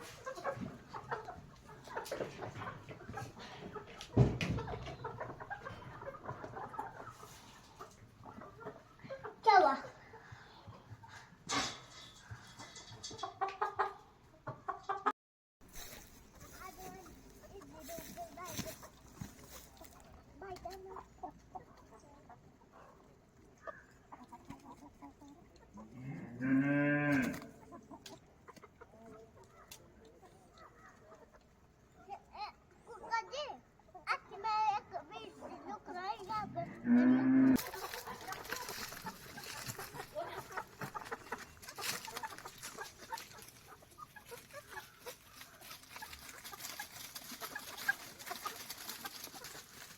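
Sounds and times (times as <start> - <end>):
chickens clucking and chirping: 0.0 - 15.1, 15.7 - 49.9
cow mooing: 26.0 - 27.4, 36.7 - 37.6.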